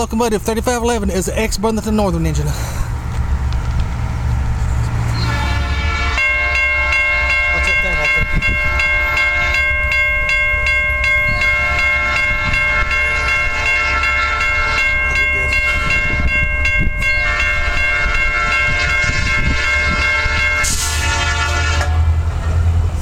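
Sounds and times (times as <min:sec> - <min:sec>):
freight train rumbling past: 0:00.0 - 0:23.0
crossing bell ringing rapidly: 0:05.2 - 0:22.8.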